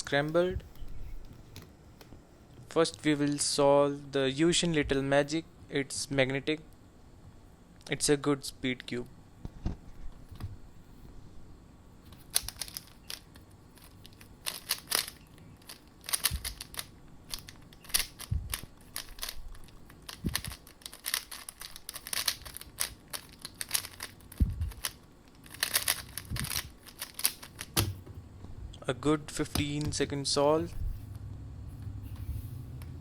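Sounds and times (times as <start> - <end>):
speed cube clicking: 12.1 - 27.9.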